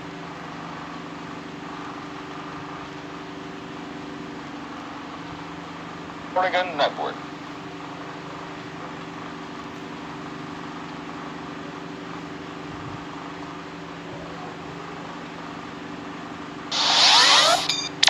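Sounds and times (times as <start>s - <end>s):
low hum of fixed tones: 4.3s - 18.0s.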